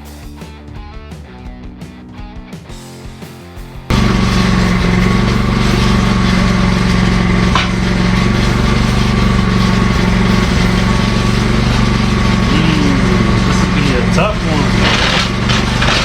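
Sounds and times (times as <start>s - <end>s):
power tool motor running: 3.9s - 16.0s.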